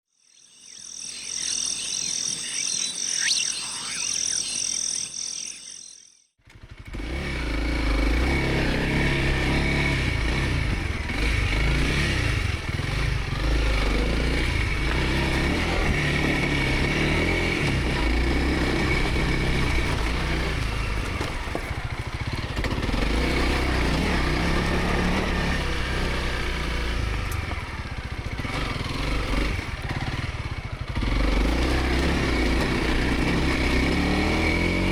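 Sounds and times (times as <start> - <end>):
high pulsing tones: 0.2 - 6.2
motorcycle engine running: 6.4 - 34.9.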